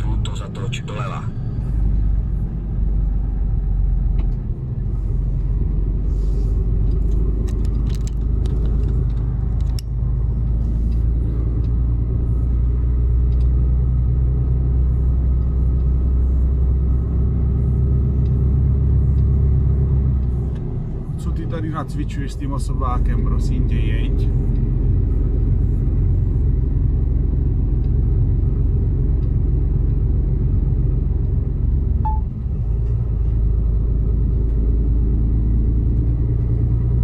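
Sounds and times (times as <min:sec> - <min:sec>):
truck diesel engine rumble: 0:00.0 - 0:37.0
light clicks and rattles: 0:06.8 - 0:11.8.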